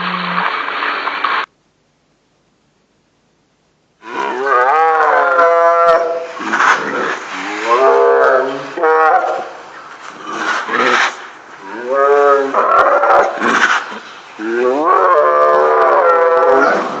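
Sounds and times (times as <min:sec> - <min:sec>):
tiger roaring: 0:04.0 - 0:17.0.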